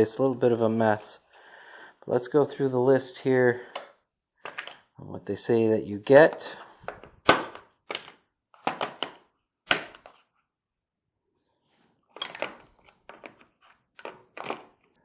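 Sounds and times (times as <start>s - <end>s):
metal tools clinking together: 12.2s - 12.6s, 14.0s - 14.4s.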